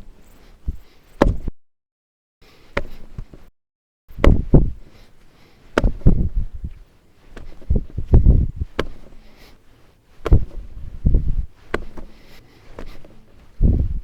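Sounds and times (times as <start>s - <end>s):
dough knocking and thudding on table: 1.2s - 1.5s, 4.1s - 4.8s, 5.8s - 6.4s, 7.4s - 9.1s, 10.2s - 12.2s.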